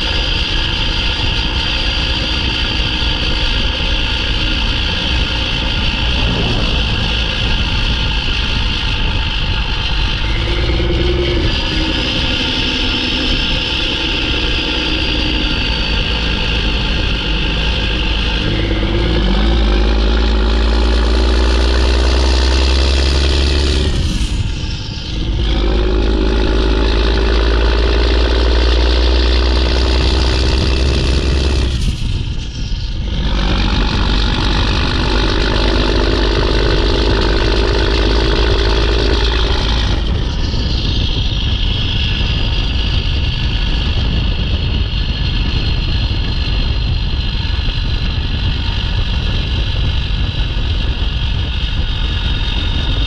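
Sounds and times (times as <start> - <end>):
diesel truck engine working hard: 0.0 - 53.0
turbo whistle: 1.8 - 40.1.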